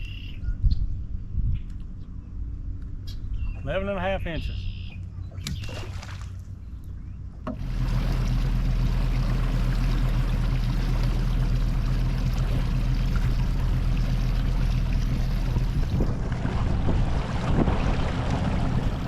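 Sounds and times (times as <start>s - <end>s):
outboard motor droning: 4.6s - 19.0s
wind and water rushing: 7.5s - 19.0s.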